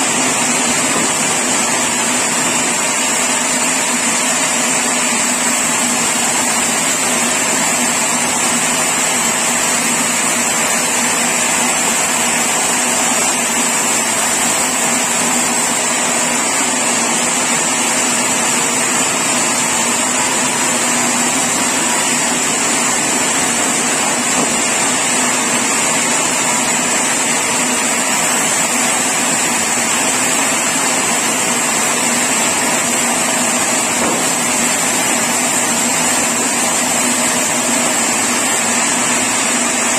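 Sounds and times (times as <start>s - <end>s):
sawmill saw whining: 0.0s - 39.9s.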